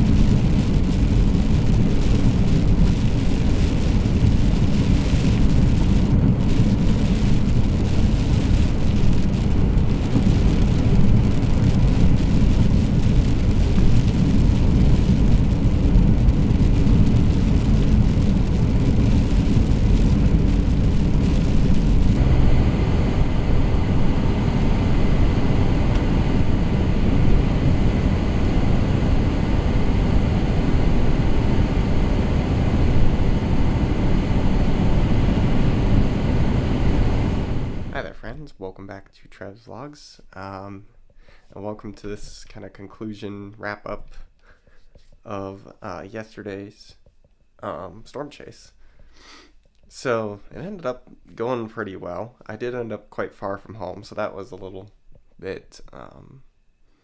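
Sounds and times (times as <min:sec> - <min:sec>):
car road and engine rumble: 0:00.0 - 0:37.9.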